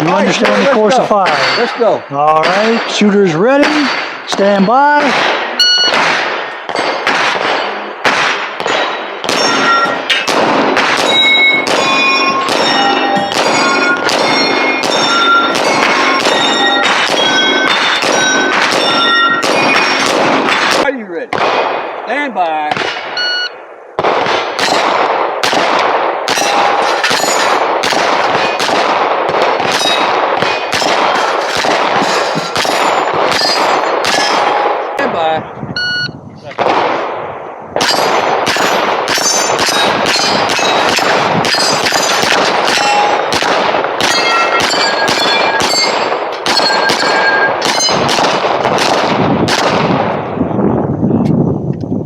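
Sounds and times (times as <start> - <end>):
rapid gunshots: 0.0 - 22.0, 22.7 - 23.2, 24.0 - 35.0, 36.6 - 50.2
steel plate ringing clang: 0.2 - 3.1, 5.6 - 6.0, 8.7 - 20.5, 26.3 - 28.6, 29.6 - 34.6, 37.8 - 43.4, 44.0 - 48.2.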